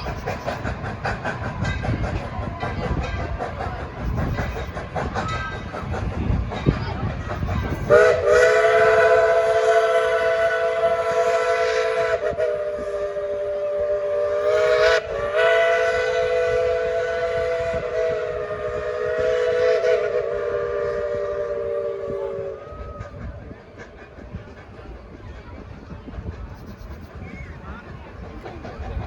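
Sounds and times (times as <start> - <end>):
steam locomotive chime whistle: 7.4 - 23.2.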